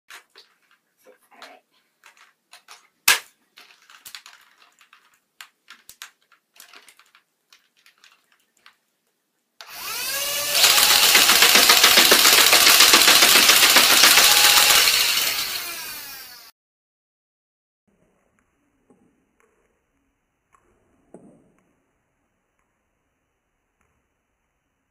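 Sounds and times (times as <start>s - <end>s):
handling clicks and knocks: 0.1s - 8.8s
dart blaster motor whine: 9.6s - 16.5s
dart blaster automatic firing: 10.2s - 15.5s.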